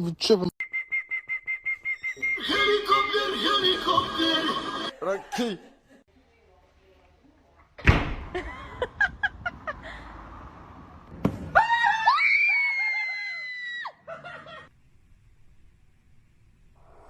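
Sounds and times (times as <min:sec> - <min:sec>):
high-pitched scream: 0:02.1 - 0:04.9, 0:11.6 - 0:14.0
thud: 0:07.8 - 0:08.5, 0:11.1 - 0:11.6.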